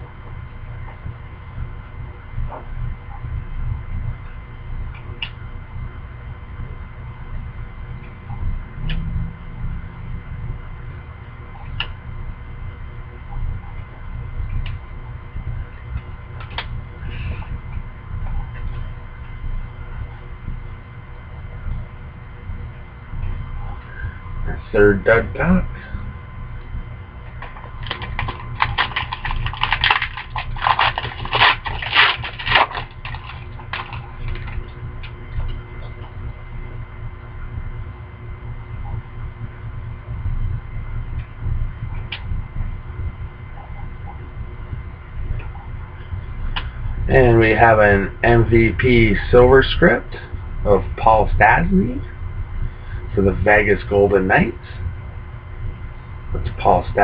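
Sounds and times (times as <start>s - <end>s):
low hum: 0.0s - 57.0s
steady low rumble: 0.0s - 57.0s
card packs rustling: 27.4s - 34.7s
wrapper tearing and crinkling: 27.8s - 34.6s.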